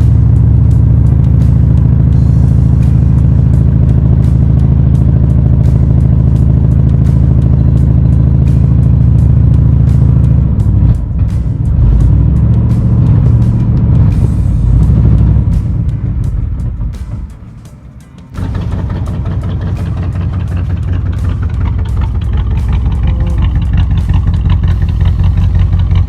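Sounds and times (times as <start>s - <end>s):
car engine running: 0.0s - 26.0s.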